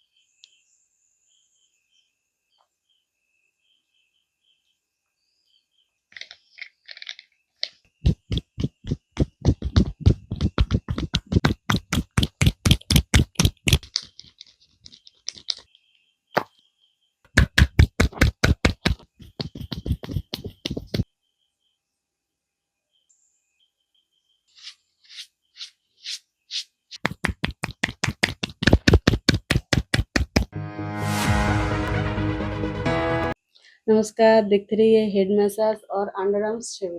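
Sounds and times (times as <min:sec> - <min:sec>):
hand percussion head massage: 0:08.0 - 0:14.0, 0:17.4 - 0:21.0, 0:27.0 - 0:30.5
light thin taps: 0:17.4 - 0:21.0.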